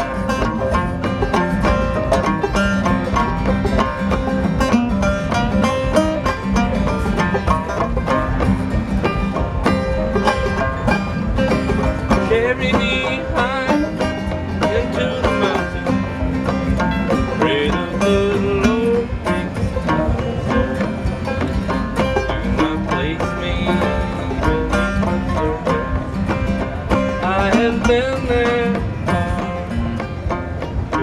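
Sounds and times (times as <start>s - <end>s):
banjo picking: 0.0s - 31.0s
sliding string melody: 0.0s - 31.0s.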